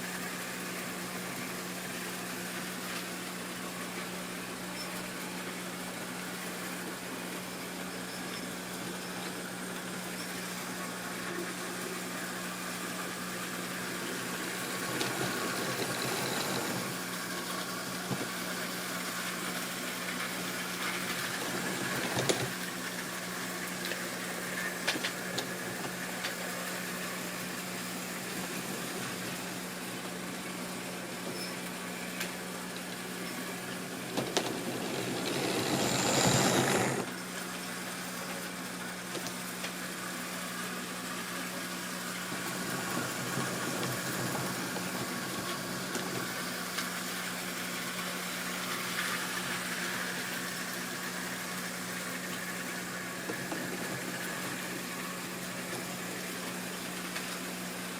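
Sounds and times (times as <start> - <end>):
electric motor hum: 12.9 - 30.2, 33.0 - 37.2, 42.0 - 46.7
train wheels clicking: 14.6 - 17.0, 34.2 - 37.1.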